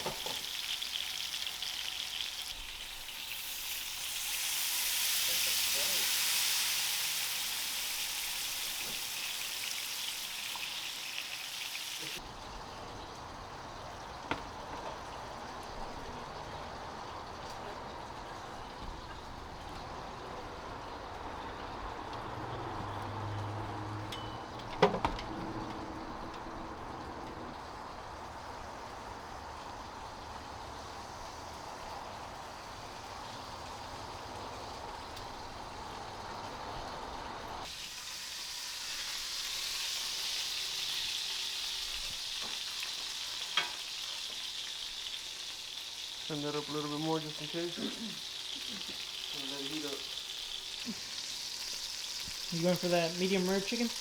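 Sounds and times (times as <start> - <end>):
chicken sizzling in frying pan: 0.0 - 19.4, 26.8 - 54.0.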